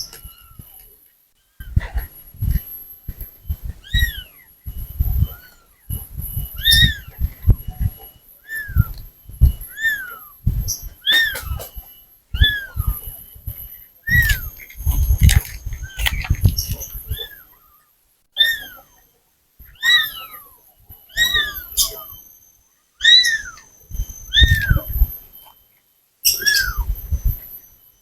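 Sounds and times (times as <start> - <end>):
low rumbling noise: 1.6 - 17.2
kitten mewing: 6.6 - 7.7, 12.4 - 13.1.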